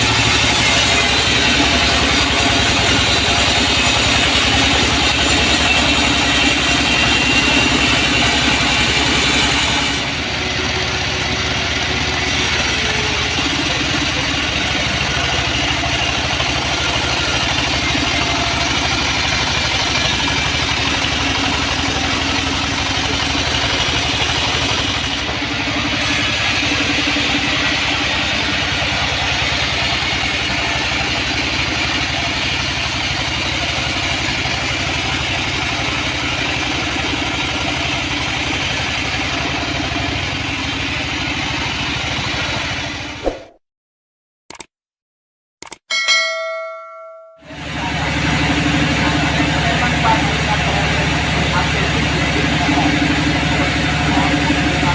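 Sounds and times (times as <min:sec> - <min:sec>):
band saw mechanical drone: 0:00.0 - 0:43.2, 0:47.5 - 0:54.9.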